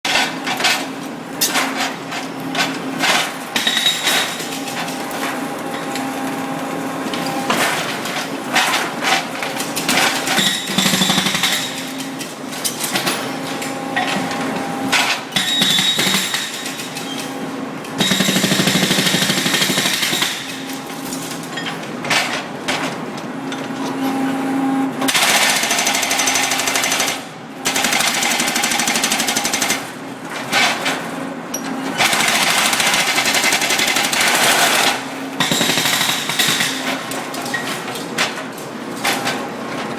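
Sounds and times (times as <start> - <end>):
hydraulic breaker hammering rock: 15.3 - 16.7, 18.0 - 20.7, 32.0 - 37.0.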